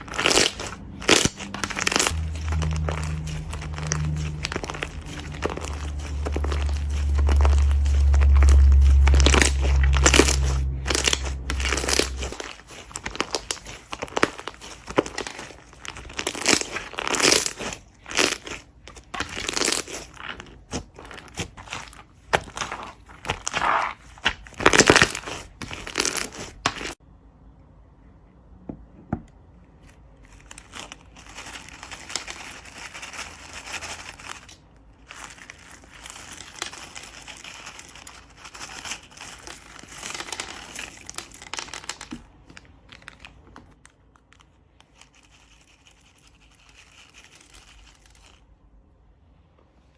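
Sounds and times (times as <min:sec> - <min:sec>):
deep rumble: 0:00.0 - 0:12.5
slime squishing and popping: 0:00.0 - 0:27.0.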